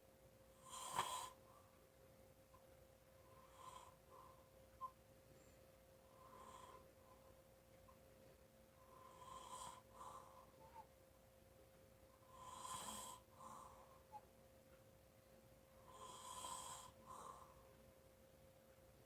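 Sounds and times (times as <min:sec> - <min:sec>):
person snoring: 0:00.6 - 0:01.4, 0:12.3 - 0:13.2, 0:15.9 - 0:17.0.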